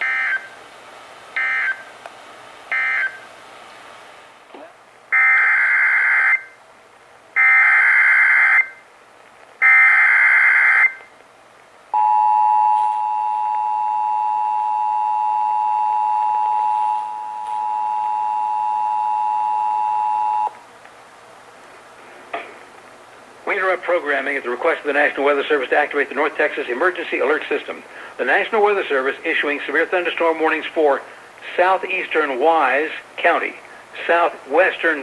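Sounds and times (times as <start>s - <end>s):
two-tone attention signal: 12.0s - 20.6s.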